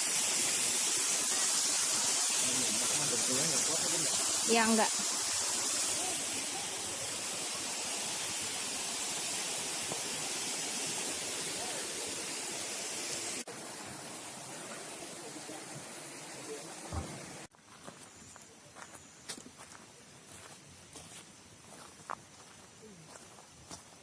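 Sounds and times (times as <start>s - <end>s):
waterfall rushing: 0.0s - 17.5s.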